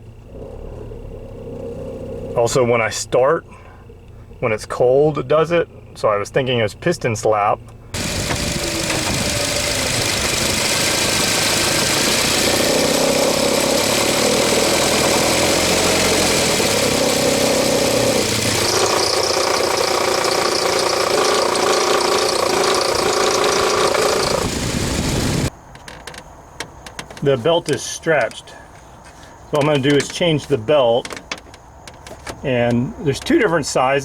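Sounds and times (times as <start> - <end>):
engine knocking: 8.0 - 25.5.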